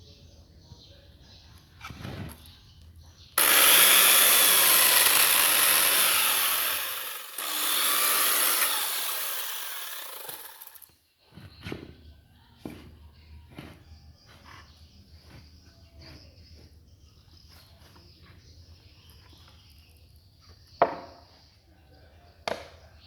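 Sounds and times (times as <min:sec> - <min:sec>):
power tool cutting wood: 0:03.4 - 0:10.9.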